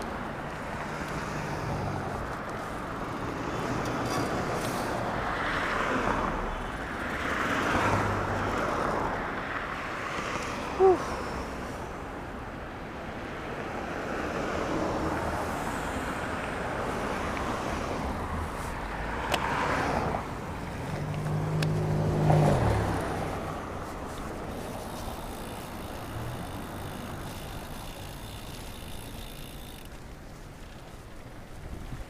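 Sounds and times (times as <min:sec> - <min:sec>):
wind and road noise: 0:00.0 - 0:32.0
vehicle engine passing: 0:17.6 - 0:29.8.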